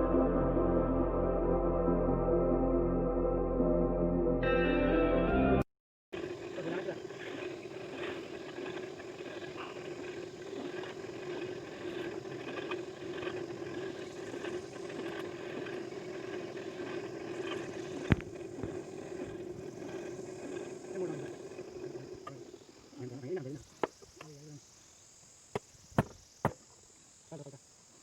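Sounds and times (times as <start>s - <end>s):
machine humming: 6.2s - 23.4s.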